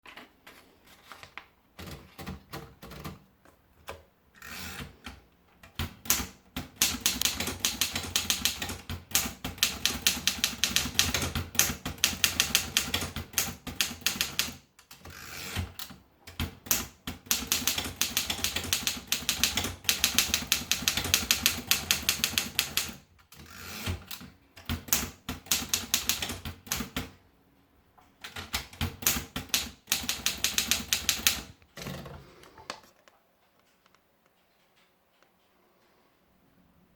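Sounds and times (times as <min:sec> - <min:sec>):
manual typewriter keystrokes: 0:01.8 - 0:27.2, 0:28.2 - 0:31.6.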